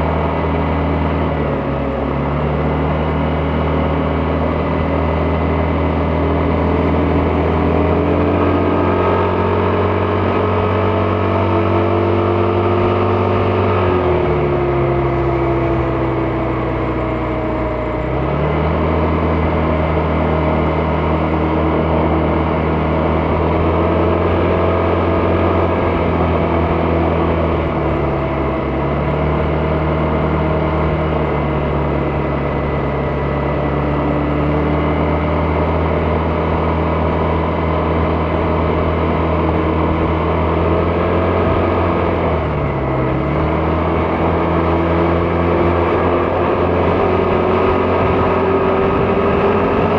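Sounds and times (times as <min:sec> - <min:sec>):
scooter engine running: 0:00.0 - 0:49.9.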